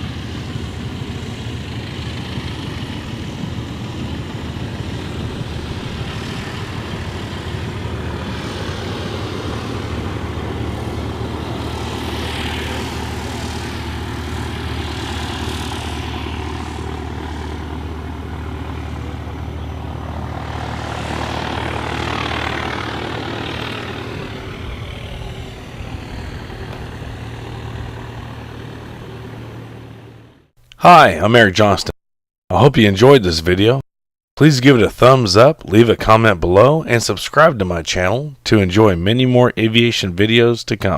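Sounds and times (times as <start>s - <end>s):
propeller aircraft engine: 0.0s - 30.5s
steady low hum: 0.0s - 30.5s.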